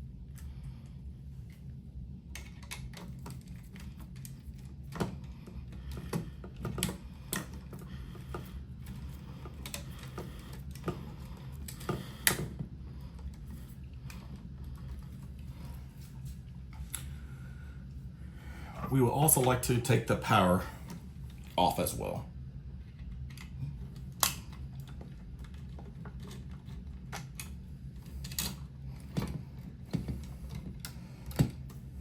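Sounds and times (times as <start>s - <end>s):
steady low hum: 0.0s - 32.0s
clicks and taps of wiring work: 2.3s - 12.6s.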